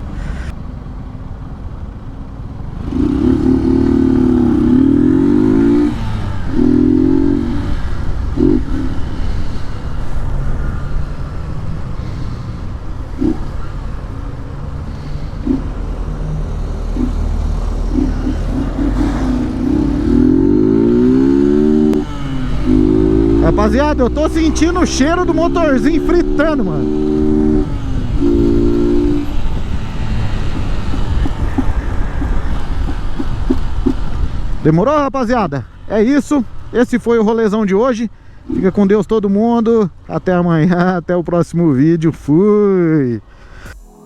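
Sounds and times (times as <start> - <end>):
motorcycle engine revving: 0.0 - 34.8.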